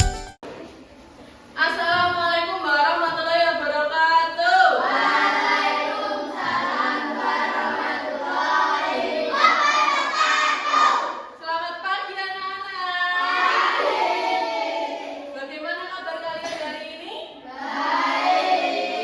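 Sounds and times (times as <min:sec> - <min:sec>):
children singing: 0:04.7 - 0:11.3, 0:13.2 - 0:15.4, 0:17.5 - 0:19.0.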